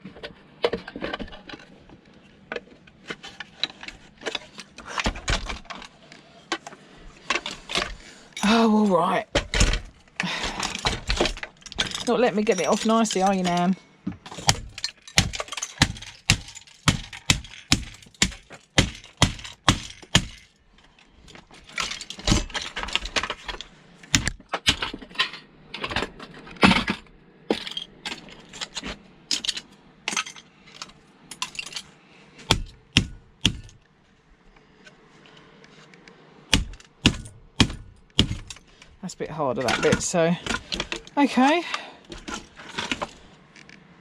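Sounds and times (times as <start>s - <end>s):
metallic clattering: 9.3s - 20.6s, 39.6s - 43.3s
sharp metallic knocks: 14.3s - 20.5s, 32.5s - 33.8s, 36.5s - 38.7s.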